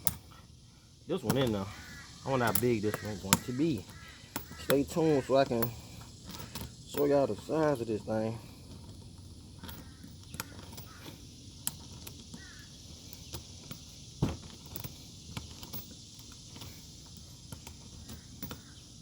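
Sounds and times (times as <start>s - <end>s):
hand tool clicks and taps: 1.3s - 1.6s, 2.4s - 7.1s, 17.5s - 18.6s.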